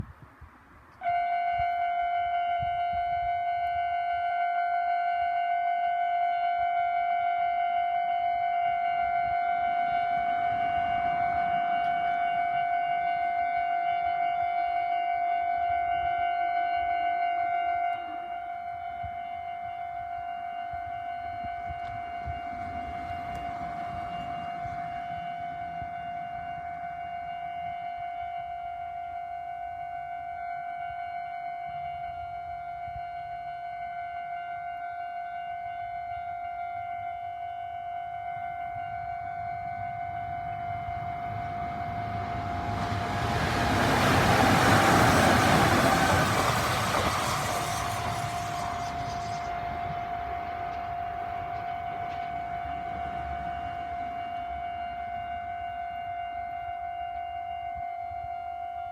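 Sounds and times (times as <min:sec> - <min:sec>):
train passing: 0:08.2 - 0:14.9, 0:19.5 - 0:30.3, 0:35.2 - 0:57.0
level crossing alarm ringing: 0:37.2 - 0:58.9.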